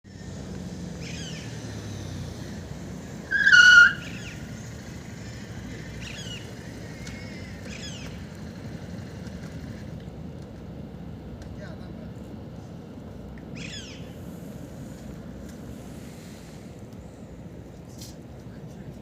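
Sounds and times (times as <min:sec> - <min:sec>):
birds chirping: 0:00.9 - 0:08.3, 0:13.5 - 0:14.2
loud high bird call: 0:03.2 - 0:04.6, 0:13.6 - 0:14.2.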